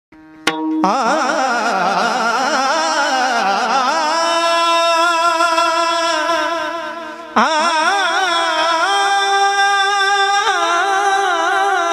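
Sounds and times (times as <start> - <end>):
devotional song melody: 0.2 - 11.9
sharp strike: 0.4 - 1.4.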